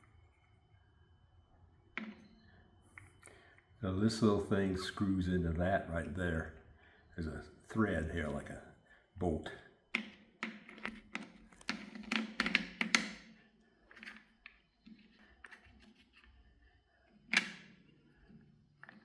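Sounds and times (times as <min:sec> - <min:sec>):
plastic and metal parts clicking: 0:10.0 - 0:16.2.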